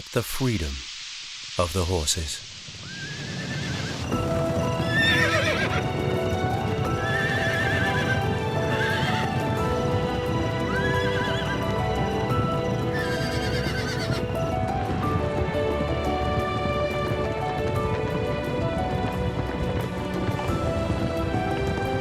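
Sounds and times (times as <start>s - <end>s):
horses whinnying: 2.8s - 9.5s, 10.7s - 11.6s, 12.9s - 14.3s
hooves drumming: 2.8s - 22.0s
music: 3.3s - 22.0s.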